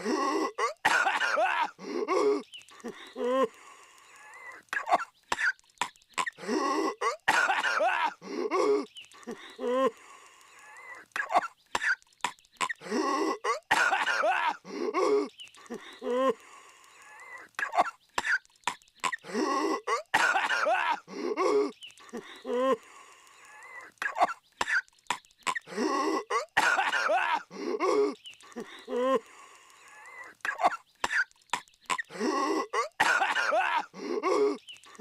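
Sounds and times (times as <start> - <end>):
cartoon character coughing: 0.0 - 2.4, 6.2 - 8.9, 11.2 - 12.0, 12.6 - 15.3, 19.0 - 21.7, 24.0 - 24.8, 25.5 - 28.2, 30.5 - 31.3, 31.9 - 34.6.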